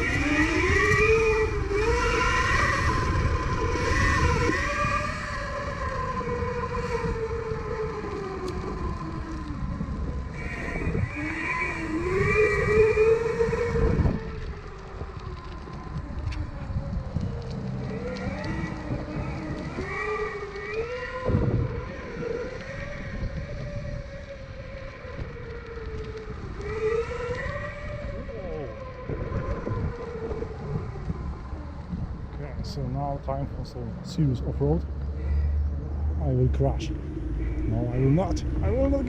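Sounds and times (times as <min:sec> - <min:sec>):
electric motors whining: 0:00.0 - 0:39.0
low rumble: 0:27.6 - 0:39.0.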